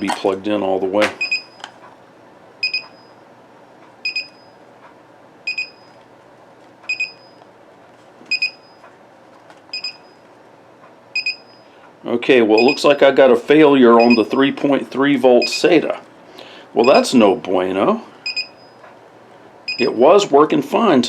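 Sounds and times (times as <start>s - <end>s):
high double beep alarm: 1.2s - 1.6s, 2.6s - 3.2s, 4.0s - 4.6s, 5.5s - 6.0s, 6.9s - 7.4s, 11.2s - 11.7s, 12.6s - 12.9s, 14.0s - 14.2s, 18.2s - 18.8s, 19.7s - 20.0s.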